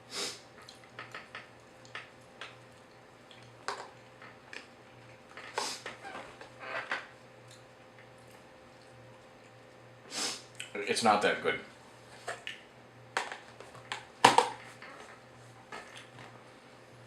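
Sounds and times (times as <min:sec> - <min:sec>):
chewing: 0:00.6 - 0:05.4.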